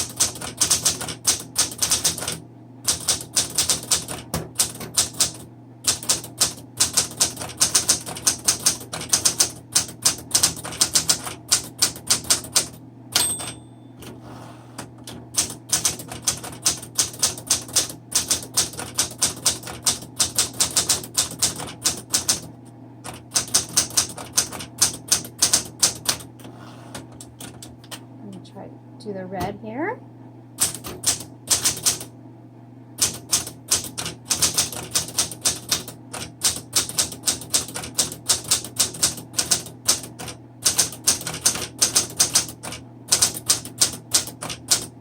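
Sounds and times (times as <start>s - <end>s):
typewriter key strikes: 13.2s - 13.6s
typewriter carriage bell: 13.2s - 14.0s.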